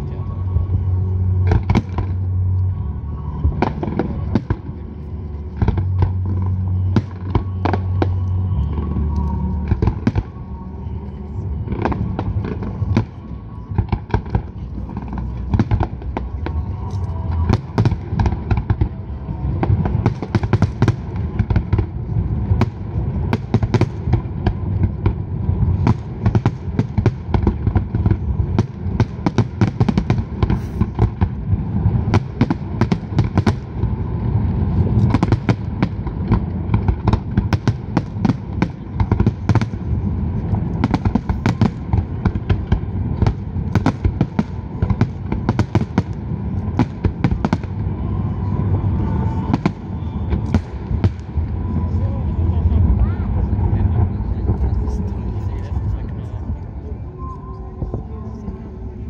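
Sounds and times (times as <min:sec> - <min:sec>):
deep rumble: 0:00.0 - 0:59.0
rapid firework crackling: 0:11.6 - 0:52.0.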